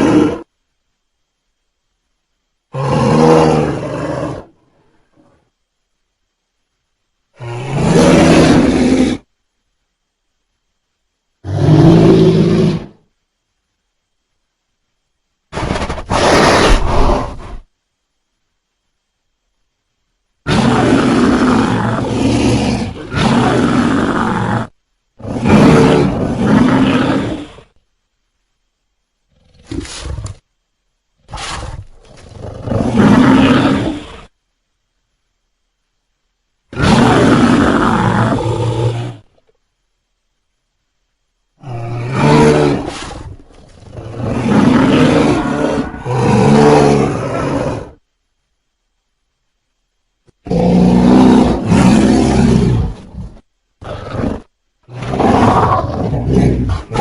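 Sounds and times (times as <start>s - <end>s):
giant ape roaring: 0.0s - 0.5s, 2.7s - 4.5s, 7.4s - 9.3s, 15.6s - 17.6s, 20.5s - 27.8s, 31.2s - 34.3s, 36.7s - 39.3s, 41.6s - 48.0s, 50.4s - 57.0s
deep rough monster roar: 43.9s - 48.0s.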